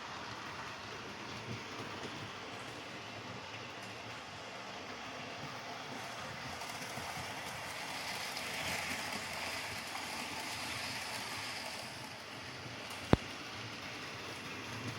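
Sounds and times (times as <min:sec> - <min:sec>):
model train whirring rattle: 0:03.7 - 0:14.9.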